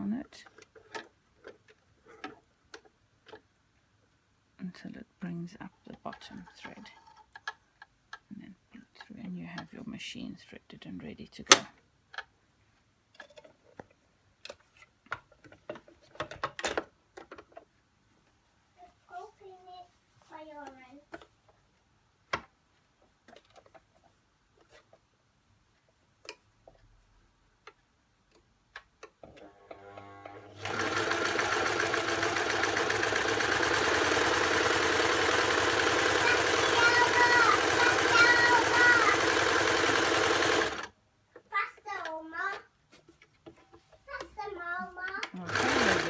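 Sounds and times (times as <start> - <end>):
sewing machine motor hum: 29.2 - 40.9, 45.4 - 46.0
sewing machine needle clattering: 29.2 - 40.9, 45.2 - 46.0.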